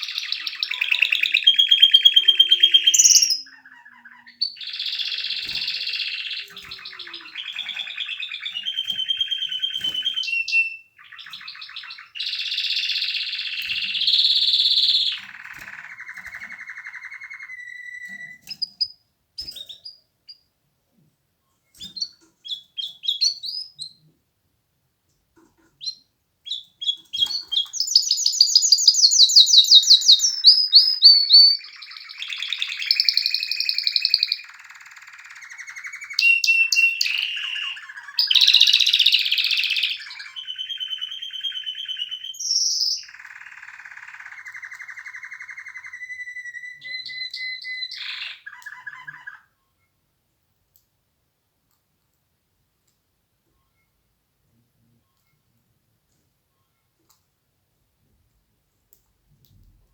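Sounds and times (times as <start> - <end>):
canary chirps: 0.0 - 20.5, 21.7 - 24.1, 25.4 - 50.0
canary trilling song: 0.0 - 20.5, 21.7 - 24.1, 25.7 - 49.7.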